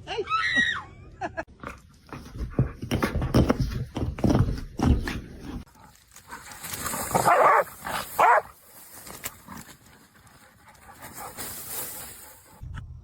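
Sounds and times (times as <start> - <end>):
dog barking: 7.2 - 8.6.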